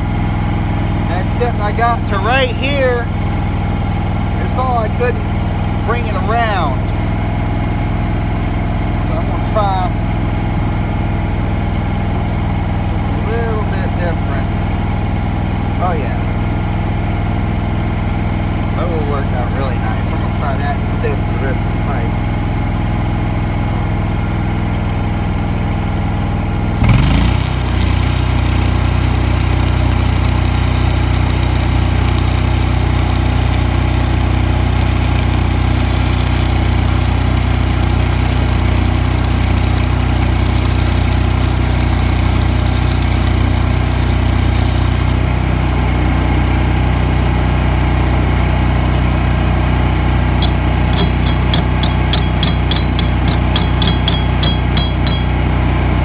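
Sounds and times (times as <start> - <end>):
welder engine running: 0.0 - 56.0
welding arc crackling: 26.6 - 45.5, 50.0 - 55.6
light metallic clinks: 50.4 - 55.5.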